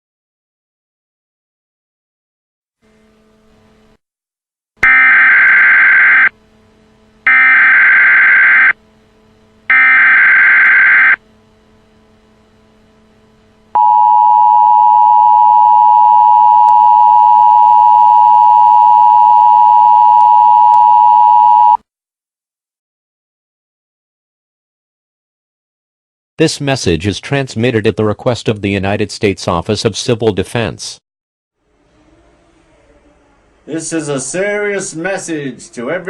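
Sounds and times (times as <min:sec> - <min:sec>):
screeching digital header bursts: 0:04.8 - 0:06.3, 0:07.2 - 0:08.8, 0:09.7 - 0:11.2
two-tone attention signal: 0:04.8 - 0:06.3, 0:07.3 - 0:08.8, 0:09.7 - 0:11.2, 0:13.8 - 0:21.8.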